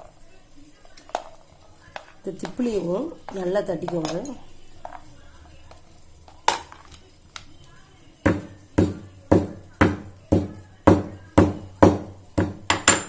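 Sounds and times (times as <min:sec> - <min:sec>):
pepper being pounded: 0:08.2 - 0:13.0.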